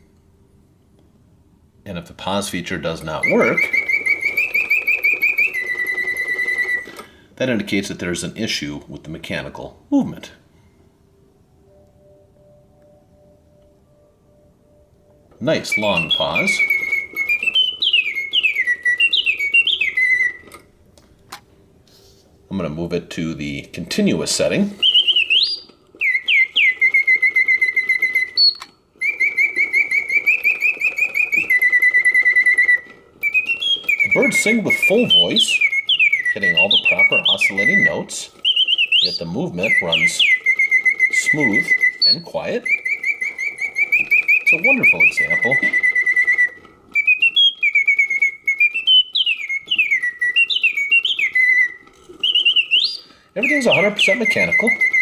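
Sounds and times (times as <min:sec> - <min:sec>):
mechanical bird whistling trills: 0:02.1 - 0:07.2, 0:15.4 - 0:20.7, 0:23.8 - 0:55.0.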